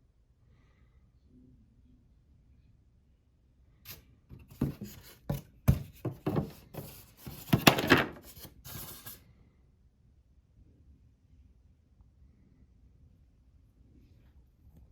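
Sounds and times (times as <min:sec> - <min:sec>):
packaging rustling and scraping: 0:03.9 - 0:09.2.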